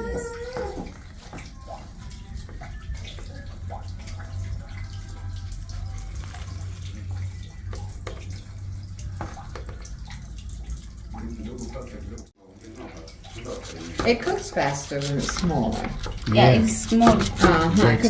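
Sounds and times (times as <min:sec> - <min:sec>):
steady low hum: 0:00.0 - 0:12.3
knife cutting leafy greens: 0:13.3 - 0:18.0.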